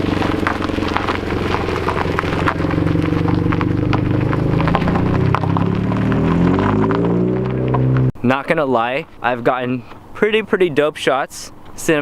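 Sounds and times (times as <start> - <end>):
car engine running at held revs: 0.0 - 8.1
exhaust crackling and popping: 0.0 - 12.0.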